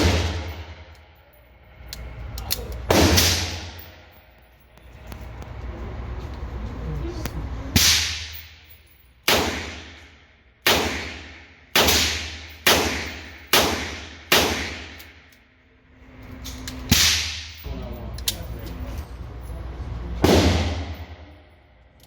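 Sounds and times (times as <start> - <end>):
handgun shots echoing: 10.7 - 15.0.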